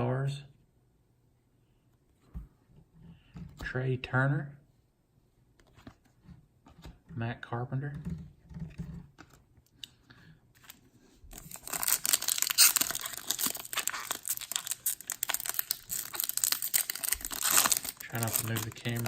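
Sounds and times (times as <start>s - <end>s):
foil wrapper tearing and crinkling: 11.3s - 19.0s.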